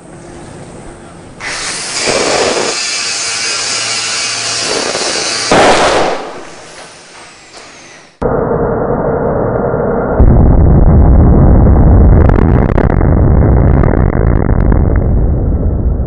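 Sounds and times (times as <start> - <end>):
grinder grinding: 1.4 - 5.6, 6.4 - 8.2
battery gas explosion: 1.4 - 8.2, 10.2 - 16.0.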